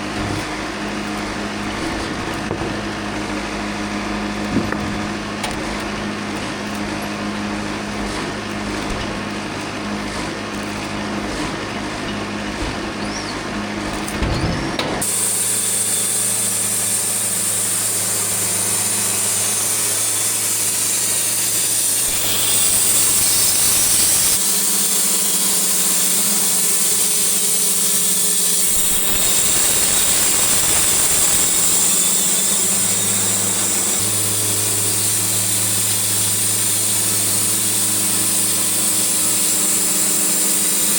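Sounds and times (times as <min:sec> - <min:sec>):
sawmill engine humming: 0:00.0 - 0:40.9
band blade cutting log: 0:15.0 - 0:40.9.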